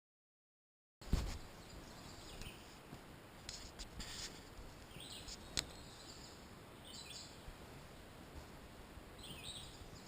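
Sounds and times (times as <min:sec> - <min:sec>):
faint outdoor ambience: 0:01.0 - 0:10.0
high bird chirp: 0:04.9 - 0:07.4, 0:09.2 - 0:10.0.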